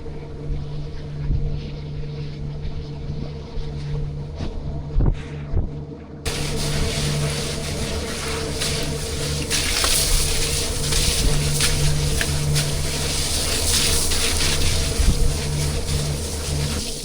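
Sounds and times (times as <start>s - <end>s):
low machine hum: 0.0s - 17.0s
running water rushing: 6.3s - 17.0s.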